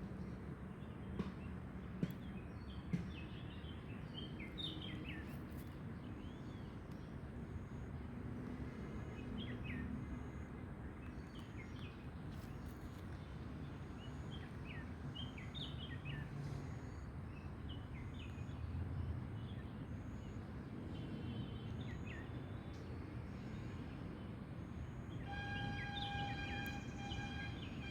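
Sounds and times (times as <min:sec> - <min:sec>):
birds chirping: 0:25.2 - 0:27.9.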